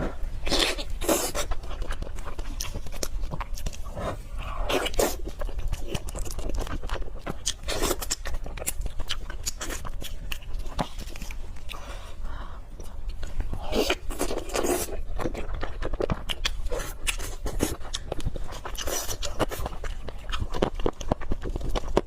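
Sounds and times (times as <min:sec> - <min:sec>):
chewing with wet mouth clicks: 0:00.4 - 0:03.8, 0:04.7 - 0:11.8, 0:12.8 - 0:22.0.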